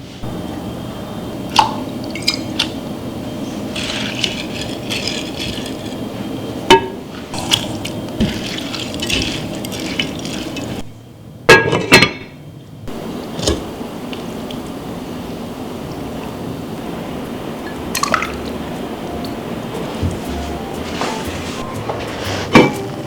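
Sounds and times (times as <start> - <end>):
liquid pouring: 1.5 - 2.7, 7.3 - 10.8, 17.9 - 18.5
dishes and utensils clinking: 3.7 - 6.0, 6.7 - 10.8, 17.7 - 23.0.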